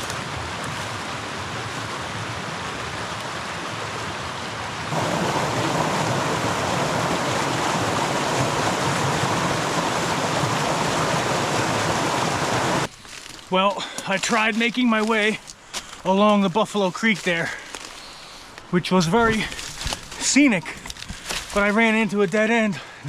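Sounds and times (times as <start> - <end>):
water rushing over rocks: 0.0 - 12.9.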